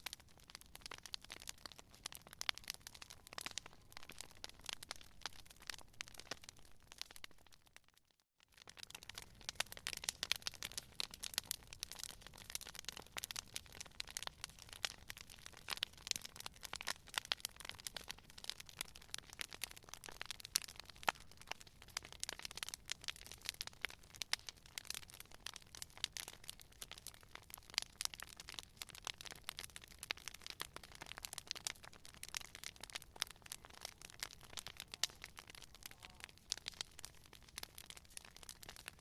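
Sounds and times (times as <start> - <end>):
campfire crackling and popping: 0.0 - 39.0.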